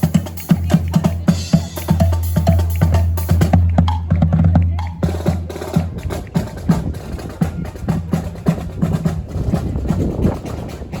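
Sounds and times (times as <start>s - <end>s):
marching band playing: 0.0s - 11.0s.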